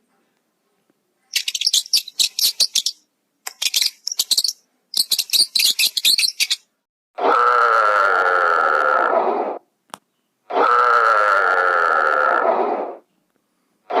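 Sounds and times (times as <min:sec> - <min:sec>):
rapid high chirps: 0:01.3 - 0:06.7
harsh pitched animal call: 0:10.5 - 0:13.0.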